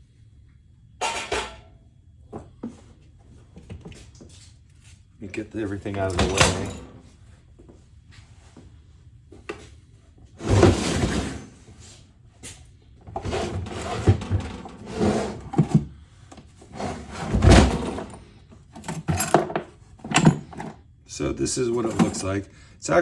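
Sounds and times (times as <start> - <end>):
objects scraping and clunking: 10.4 - 12.0, 13.1 - 20.8, 21.8 - 22.4.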